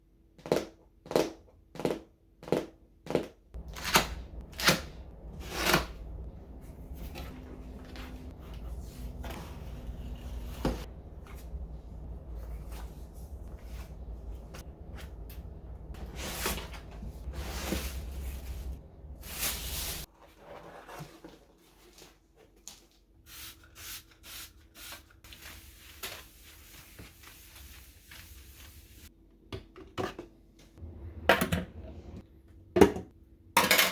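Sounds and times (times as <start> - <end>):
low rumble: 3.6 - 20.0.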